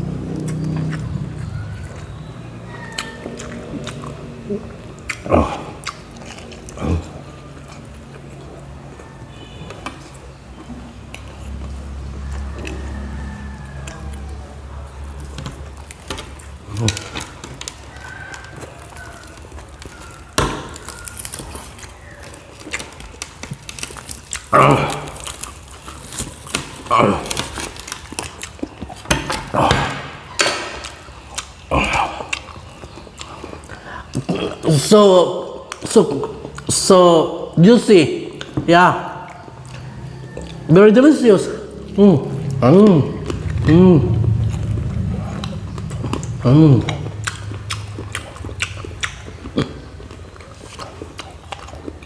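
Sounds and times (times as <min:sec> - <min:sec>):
chewing crispy fried pork: 0:00.0 - 0:52.0
low steady hum: 0:41.4 - 0:52.0
wet mouth clicks and smacks: 0:45.4 - 0:52.0.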